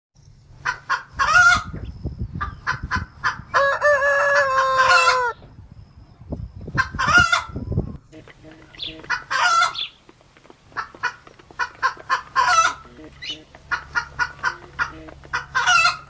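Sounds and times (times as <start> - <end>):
chickens clucking: 0.6 - 5.5, 6.6 - 16.0
rooster crowing: 3.5 - 5.4.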